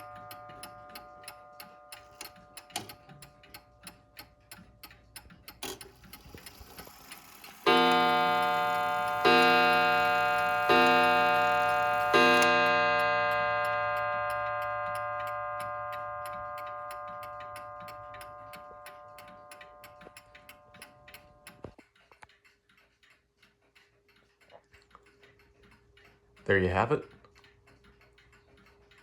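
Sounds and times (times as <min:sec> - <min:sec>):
clock ticking: 0:00.0 - 0:29.0
clock gong striking: 0:07.7 - 0:19.8.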